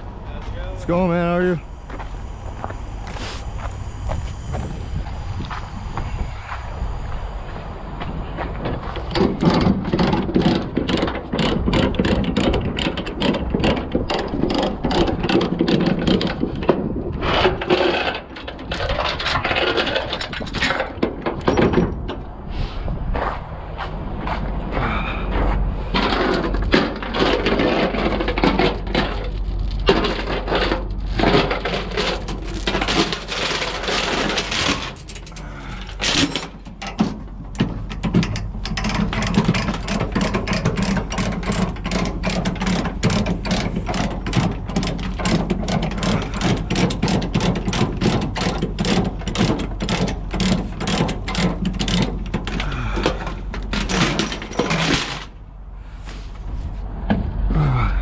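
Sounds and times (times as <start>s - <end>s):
engine running: 0.0s - 58.0s
fast mechanical clicks: 8.9s - 21.5s, 25.9s - 55.4s.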